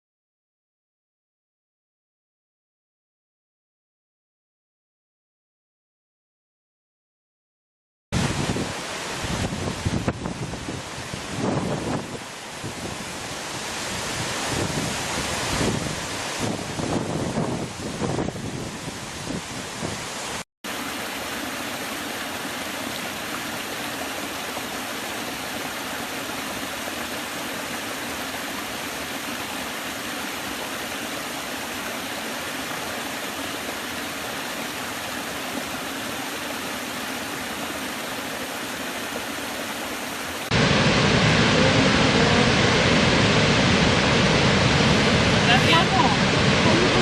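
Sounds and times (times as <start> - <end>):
waterfall rushing: 8.2 - 47.0.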